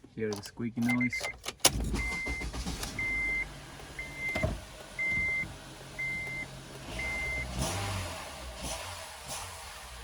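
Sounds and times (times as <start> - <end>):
dashboard warning chime beeping: 0.3 - 7.6.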